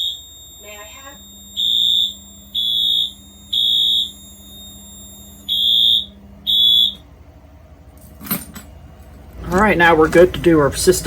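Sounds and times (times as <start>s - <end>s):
fire alarm horn beeping: 0.0s - 7.2s.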